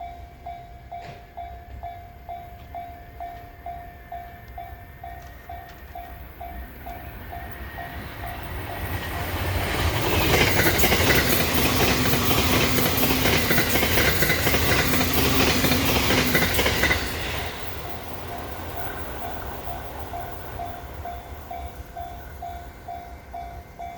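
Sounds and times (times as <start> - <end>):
electric train passing: 0.0 - 23.9
wheels clickety-clack: 5.2 - 23.0.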